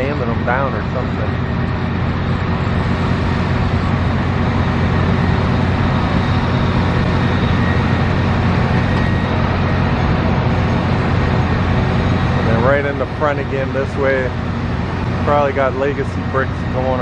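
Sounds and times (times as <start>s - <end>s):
faint high whine: 0.0s - 17.0s
street traffic rumble: 0.0s - 17.0s.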